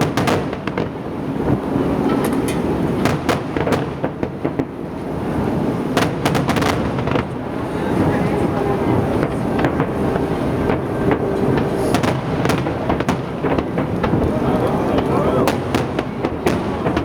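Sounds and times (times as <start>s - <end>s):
fireworks booming: 0.0s - 17.0s
fireworks cracks and bangs: 0.0s - 17.0s.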